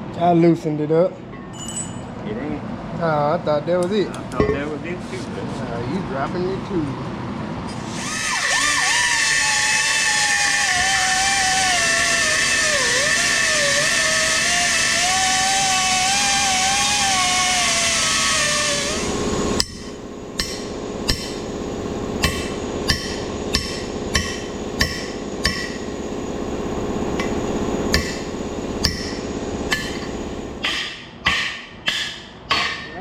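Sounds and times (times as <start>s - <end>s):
motor whining: 7.7s - 30.6s
hammer blows on steel: 22.2s - 25.9s.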